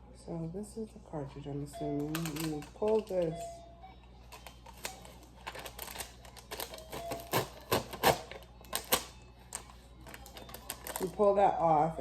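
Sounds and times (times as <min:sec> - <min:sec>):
plastic clicks and crinkles: 0:01.9 - 0:03.4, 0:04.2 - 0:11.2.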